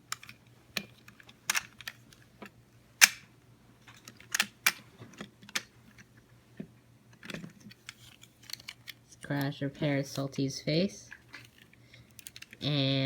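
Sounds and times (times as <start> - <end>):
hard plastic toy clicking: 12.1 - 12.6.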